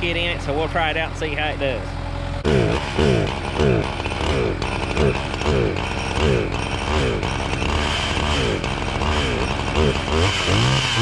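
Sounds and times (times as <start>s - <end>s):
chainsaw engine revving: 2.4s - 11.0s.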